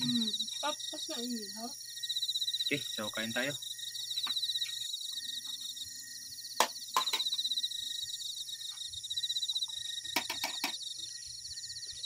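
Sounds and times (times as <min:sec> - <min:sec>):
crickets trilling: 0:00.0 - 0:12.0.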